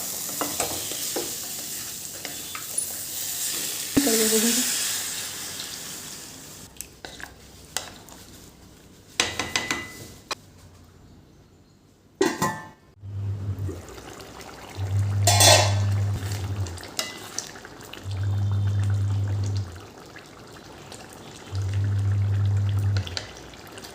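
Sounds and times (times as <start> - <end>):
cookware clatter: 9.2 - 10.2, 12.2 - 12.8, 15.2 - 15.9
kitchen utensils clinking: 9.2 - 10.3, 12.2 - 12.8, 15.2 - 16.1
low hum: 13.0 - 13.8, 14.8 - 16.7, 21.6 - 23.0.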